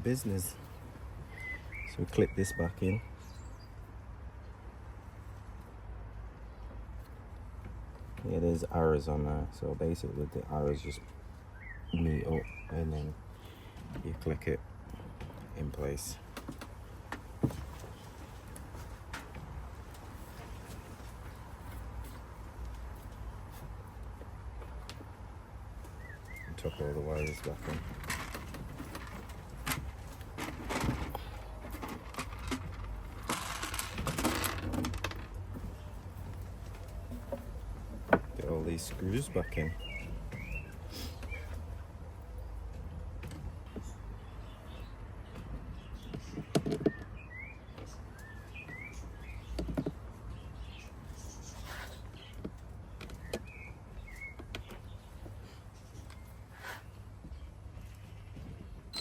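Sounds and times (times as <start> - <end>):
small birds chirping: 0.0 - 19.0, 19.8 - 30.4, 35.4 - 59.0
rustle and scrape: 17.5 - 25.0, 26.6 - 41.8, 50.3 - 52.7
parts knocking and clattering: 27.2 - 39.3.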